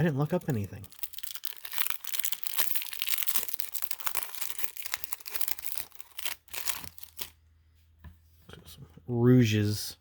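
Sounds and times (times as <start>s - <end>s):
foil wrapper crinkling and tearing: 0.0s - 7.4s.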